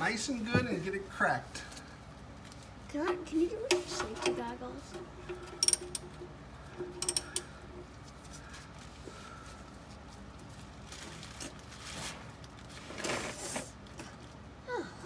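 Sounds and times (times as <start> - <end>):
rustling and scraping: 1.6 - 14.4
wrench clicks: 5.2 - 6.2, 6.9 - 7.5.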